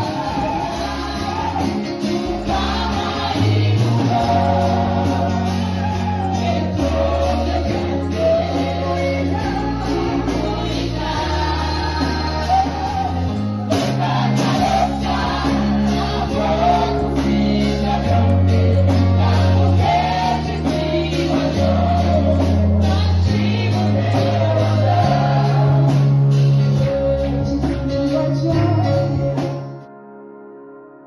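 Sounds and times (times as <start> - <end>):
steady drum beat: 0.0 - 26.5
held bass notes: 0.0 - 29.7
voices singing over a band: 0.0 - 29.8.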